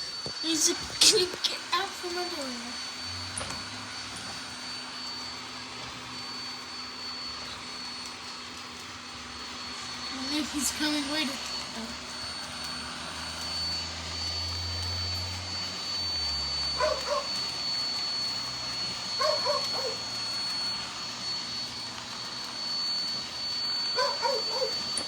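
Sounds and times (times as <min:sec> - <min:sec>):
robot vacuum whining: 0:00.0 - 0:25.0
dog barking: 0:16.8 - 0:17.3, 0:19.2 - 0:20.0, 0:24.0 - 0:24.8.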